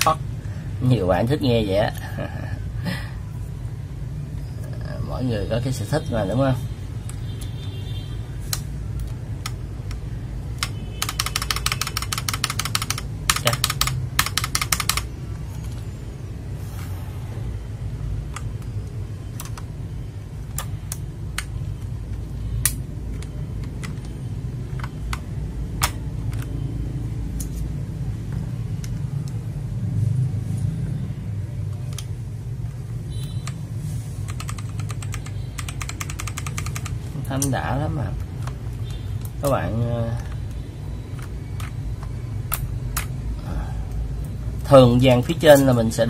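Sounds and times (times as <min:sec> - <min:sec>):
typing on mechanical keyboard: 0:08.5 - 0:15.2, 0:18.4 - 0:19.8, 0:22.7 - 0:26.6, 0:34.2 - 0:37.5.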